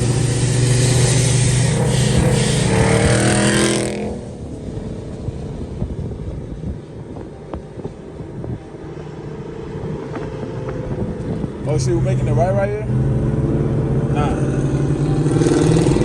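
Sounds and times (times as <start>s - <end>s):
car engine revving: 0.0s - 5.8s.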